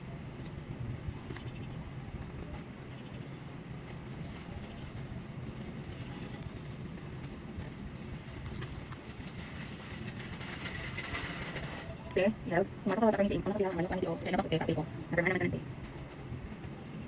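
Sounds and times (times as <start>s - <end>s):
moving vehicle rumble: 0.0s - 17.0s.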